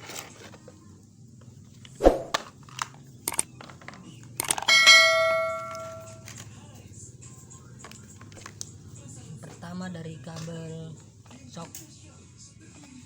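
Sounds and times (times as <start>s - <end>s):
tools and blender parts knocking: 4.5s - 6.3s
metal object ringing: 4.6s - 6.2s.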